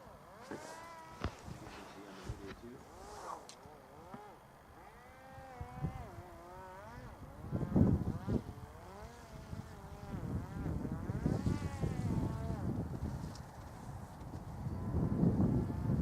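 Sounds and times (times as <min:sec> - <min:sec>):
drone motor and propeller whining: 0:00.0 - 0:16.0.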